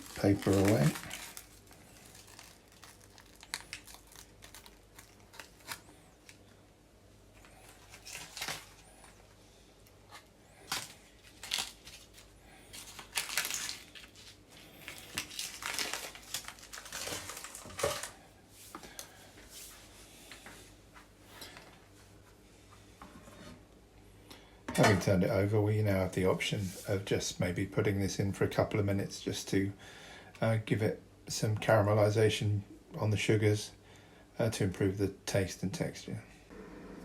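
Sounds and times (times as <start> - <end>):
baking paper crinkling and tearing: 0.0 - 6.6, 7.4 - 9.3, 10.1 - 18.3.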